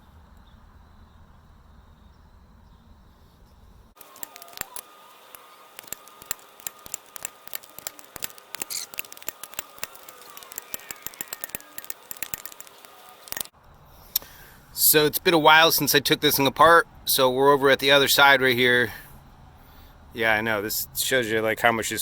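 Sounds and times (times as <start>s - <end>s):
metallic clicks and clinks: 4.0s - 13.6s.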